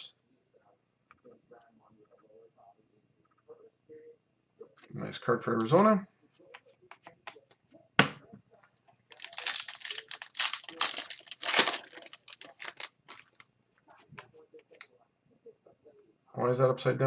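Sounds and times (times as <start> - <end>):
wrapper crinkling and tearing: 9.1 - 13.4.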